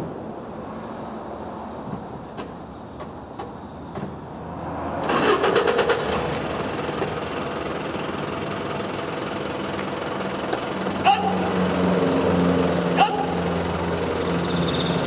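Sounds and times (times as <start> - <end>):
engine cranking and running: 5.0 - 15.0.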